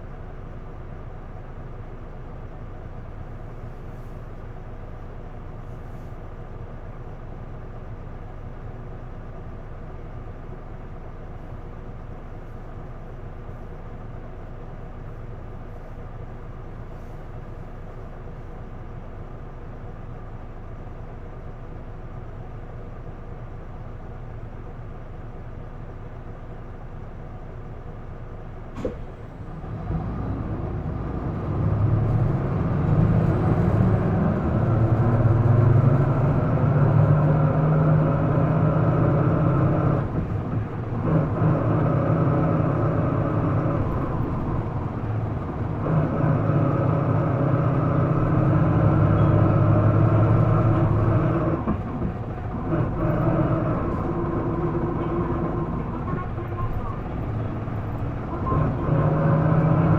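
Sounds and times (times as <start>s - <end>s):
bus diesel engine revving: 28.8s - 59.9s.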